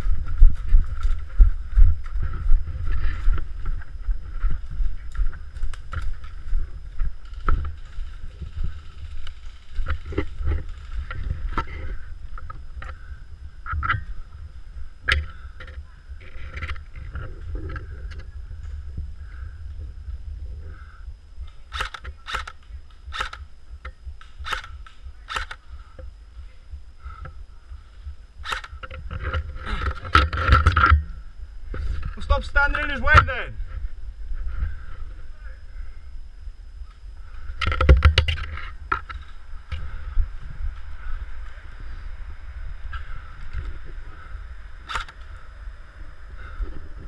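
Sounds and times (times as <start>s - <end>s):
muffled low rumble: 0.0s - 47.0s
sharp clicks and cracks: 5.1s - 13.0s, 21.5s - 26.1s, 28.4s - 31.1s, 44.8s - 45.3s.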